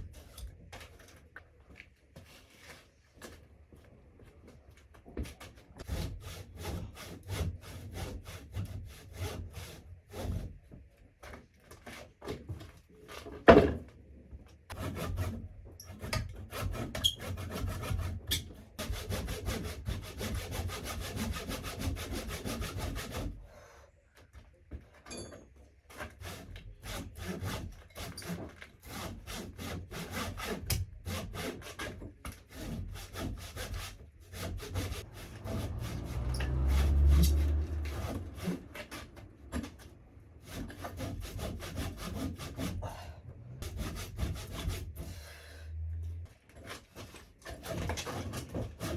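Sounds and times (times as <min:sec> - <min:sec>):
handsaw cutting through log: 0:05.8 - 0:10.6, 0:14.7 - 0:23.5, 0:25.9 - 0:45.8, 0:46.5 - 0:48.9.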